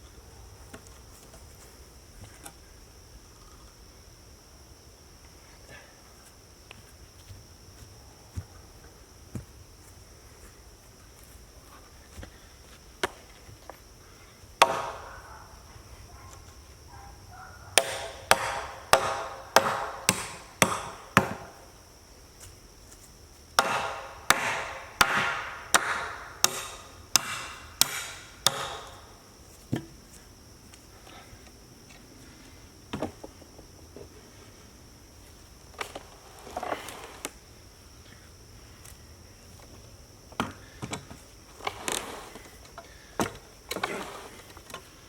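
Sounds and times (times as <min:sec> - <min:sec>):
faint high insect hiss: 0:00.0 - 0:45.0
sharp wooden knocks: 0:14.6 - 0:15.2, 0:17.8 - 0:21.7, 0:23.6 - 0:29.1.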